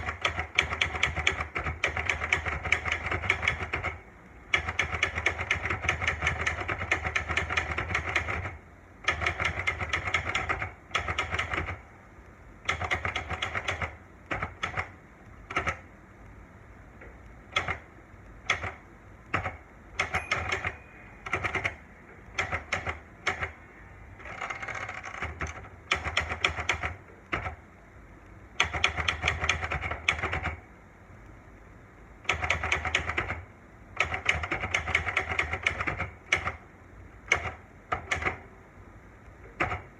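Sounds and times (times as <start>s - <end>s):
typewriter key strikes: 0.0s - 11.8s, 12.6s - 15.8s, 18.5s - 23.6s, 34.0s - 36.6s.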